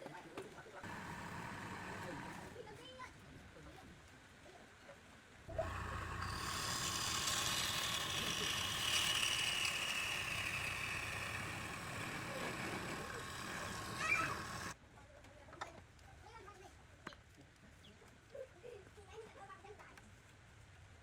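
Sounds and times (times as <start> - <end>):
lathe whirring: 0.8 - 2.6, 5.5 - 14.8.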